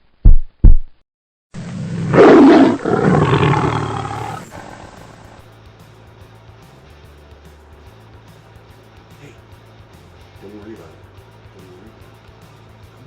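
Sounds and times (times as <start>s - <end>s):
deep thumps: 0.0s - 1.0s
big cat roaring: 1.6s - 5.4s.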